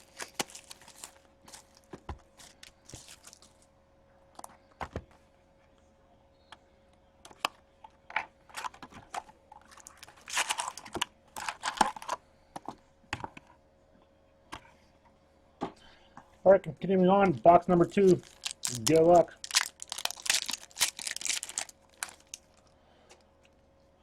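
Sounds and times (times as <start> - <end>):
packaging rustling and crackling: 0.0 - 3.7, 8.5 - 12.2, 17.9 - 22.7.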